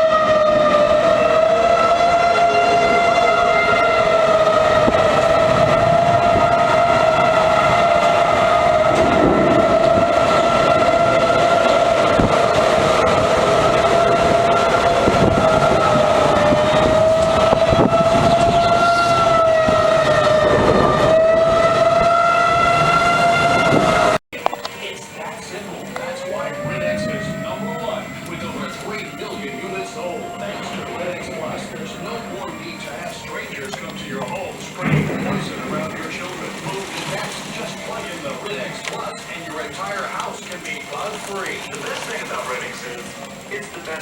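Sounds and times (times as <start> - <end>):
tornado warning siren: 0.0 - 44.0.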